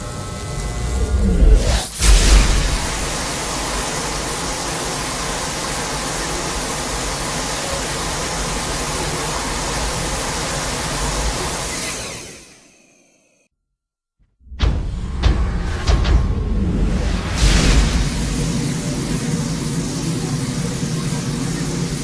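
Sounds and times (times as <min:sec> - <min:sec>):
steady rushing hiss: 0:01.0 - 0:11.6, 0:15.3 - 0:22.0.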